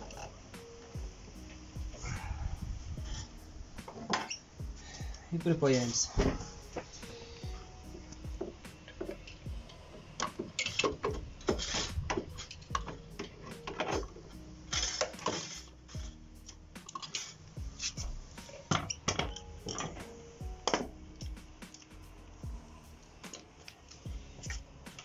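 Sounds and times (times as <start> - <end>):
background music ticking beat: 0.0 - 25.0.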